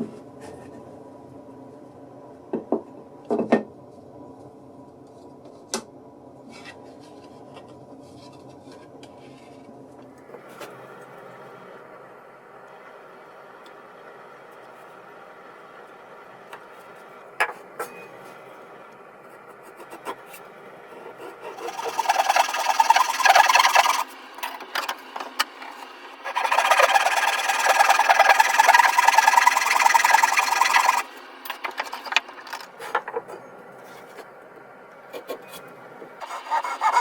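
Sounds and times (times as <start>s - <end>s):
wood rubbing by hand: 20.9s - 24.1s, 26.2s - 34.3s, 35.2s - 37.0s.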